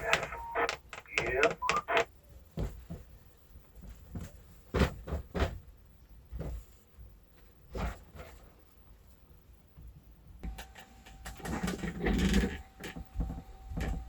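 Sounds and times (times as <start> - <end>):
objects knocking and scuffing: 3.8 - 5.7.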